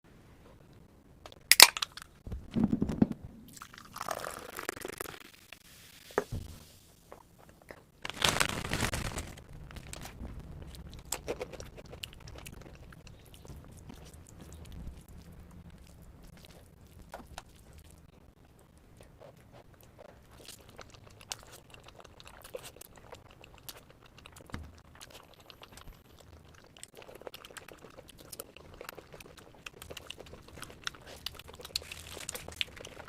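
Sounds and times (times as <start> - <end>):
crunchy bites: 1.5 - 2.1
crackly chewing: 7.1 - 33.0.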